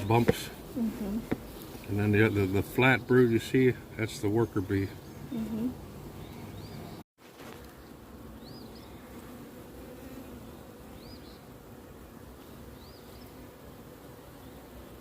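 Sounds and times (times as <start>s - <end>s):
honey bees buzzing: 0.0s - 15.0s.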